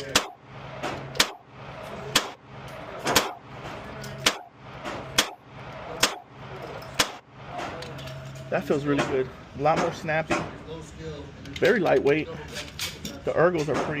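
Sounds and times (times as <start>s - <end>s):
pistol shots: 0.0s - 1.5s, 2.1s - 2.4s, 3.0s - 3.4s, 4.2s - 5.4s, 6.0s - 6.3s, 7.0s - 7.2s.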